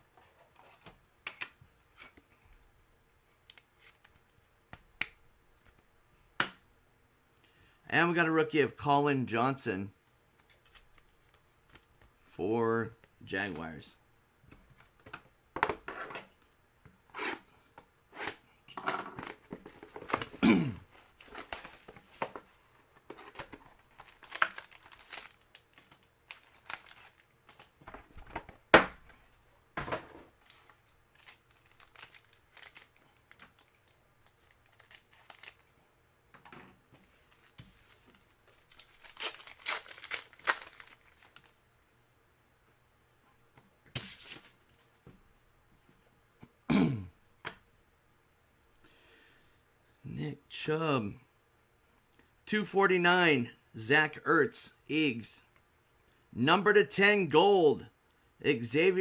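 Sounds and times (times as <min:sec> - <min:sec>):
wrappers torn and crinkled: 0:23.9 - 0:27.7, 0:31.1 - 0:35.8, 0:38.4 - 0:41.5.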